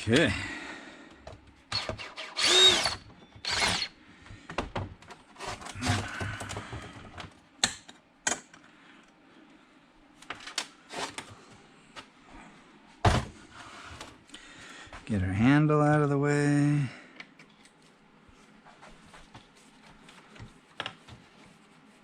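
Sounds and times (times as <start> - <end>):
power drill whirring: 1.7 - 3.9.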